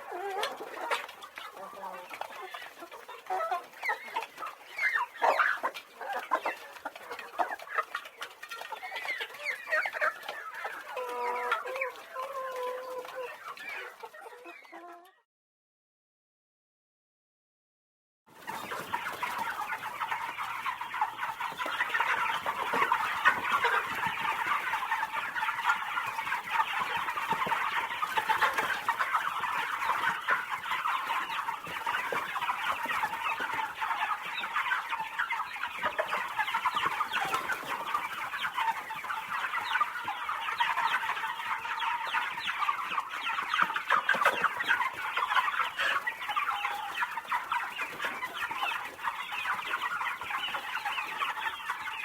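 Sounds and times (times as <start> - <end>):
chickens clucking: 0.0 - 15.2, 18.3 - 52.0.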